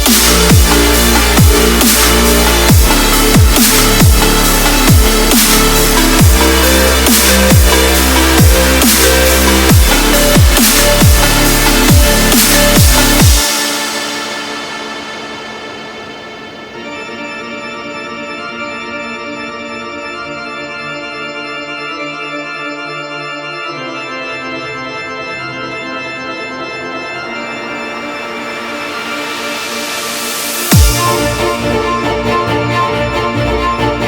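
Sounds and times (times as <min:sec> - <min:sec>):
electronic music with heavy bass: 0:00.0 - 0:34.0
organ-like keyboard chords: 0:00.0 - 0:34.0
low bass note: 0:30.7 - 0:34.0.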